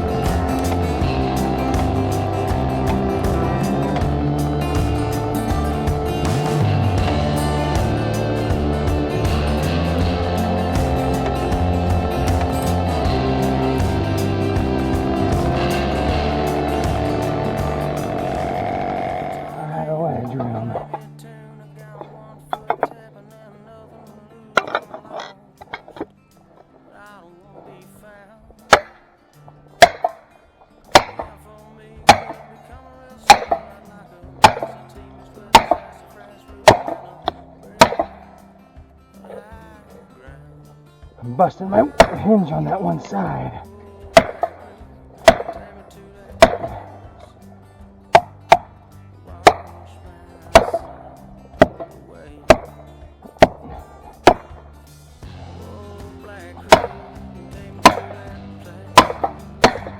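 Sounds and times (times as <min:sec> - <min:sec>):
heavy blows on felling wedge: 0:00.0 - 0:21.0, 0:29.8 - 0:30.2, 0:30.9 - 0:32.6, 0:33.3 - 0:36.0, 0:36.6 - 0:38.4, 0:41.4 - 0:47.4, 0:48.1 - 0:59.9
background music: 0:00.0 - 0:59.9
wedge being pounded into tree: 0:29.8 - 0:30.1, 0:30.9 - 0:31.4, 0:32.1 - 0:32.4, 0:33.3 - 0:33.8, 0:34.4 - 0:34.8, 0:35.5 - 0:35.9, 0:36.7 - 0:37.0, 0:37.8 - 0:38.2, 0:44.2 - 0:44.6, 0:45.2 - 0:45.7, 0:46.4 - 0:46.9, 0:49.4 - 0:49.7, 0:50.5 - 0:51.0, 0:51.6 - 0:51.9, 0:52.5 - 0:52.7, 0:53.4 - 0:54.6, 0:56.6 - 0:58.4, 0:59.0 - 0:59.9.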